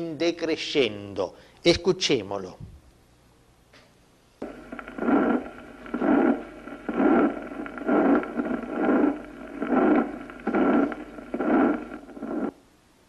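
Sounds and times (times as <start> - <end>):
heartbeat sounds: 4.4 - 12.6
rushing heart murmur: 4.4 - 12.6.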